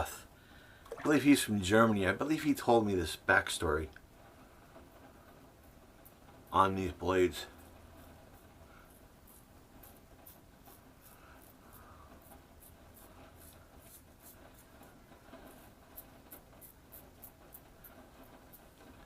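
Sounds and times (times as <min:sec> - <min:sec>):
razor scratching stubble: 0:08.2 - 0:19.0.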